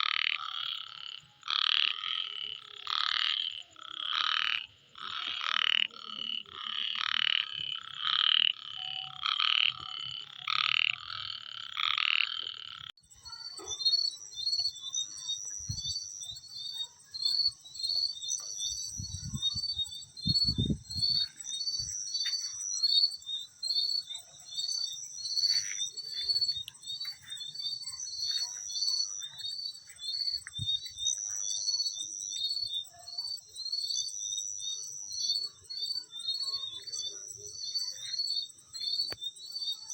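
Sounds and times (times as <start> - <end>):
crickets chirping: 0.0 - 39.9
frogs croaking: 0.0 - 39.9
high steady insect trill: 0.0 - 39.9.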